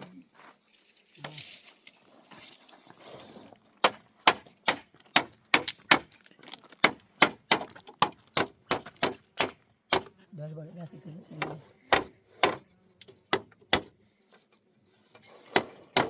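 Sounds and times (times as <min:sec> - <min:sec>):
soft rustling scrape: 0:00.2 - 0:03.6
sharp blows on wood: 0:06.8 - 0:10.1, 0:11.4 - 0:14.0.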